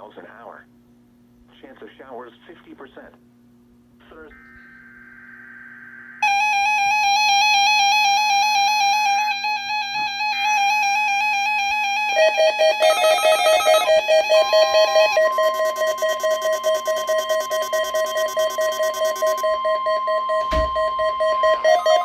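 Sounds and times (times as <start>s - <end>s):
steady warning tone: 4.2s - 22.0s
buzzy data burst: 4.3s - 19.7s, 20.6s - 22.0s
pulsing alarm: 4.3s - 22.0s
warbling electronic alarm: 4.3s - 22.0s.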